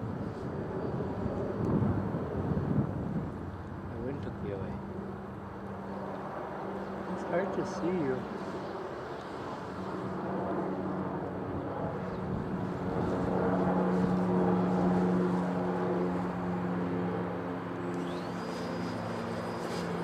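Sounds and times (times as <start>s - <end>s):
model airplane motor droning: 4.9s - 20.0s.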